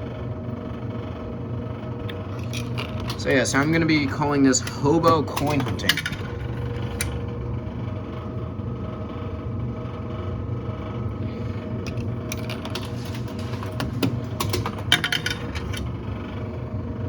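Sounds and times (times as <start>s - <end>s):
low machine hum: 0.0s - 17.0s
coin rattling through vending machine: 2.1s - 7.3s, 11.7s - 16.3s.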